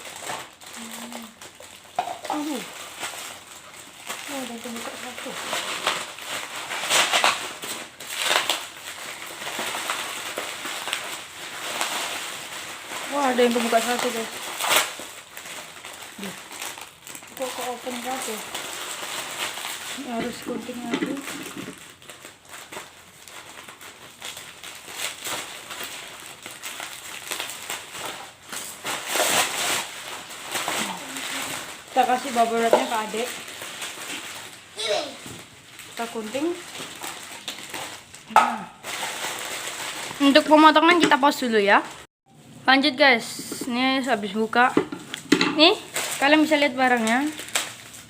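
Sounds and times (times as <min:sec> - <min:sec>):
plastic packaging crinkling: 0:00.0 - 0:42.1, 0:43.4 - 0:48.0
plastic wrap rustling and crackling: 0:00.0 - 0:48.0.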